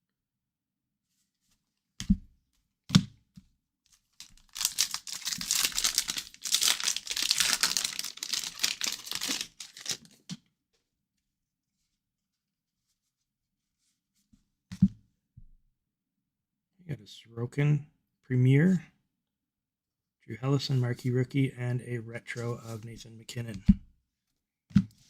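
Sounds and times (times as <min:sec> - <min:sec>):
wrapper tearing and crinkling: 0:04.2 - 0:10.2.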